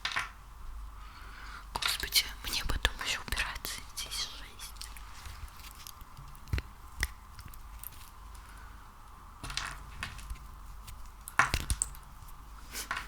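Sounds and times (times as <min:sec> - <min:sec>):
hands working sticky material: 0:03.6 - 0:08.4, 0:09.8 - 0:13.0.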